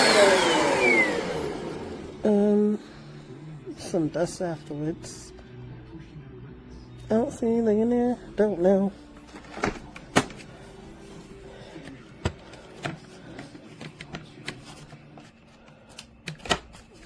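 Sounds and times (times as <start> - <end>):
plastic clicks and snaps: 15.9 - 16.8.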